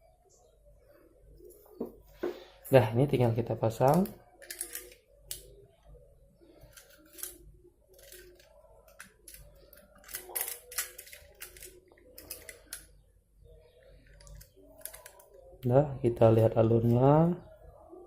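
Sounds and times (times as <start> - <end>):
plastic parts clicking: 3.8 - 5.5, 6.6 - 12.9, 14.0 - 15.3.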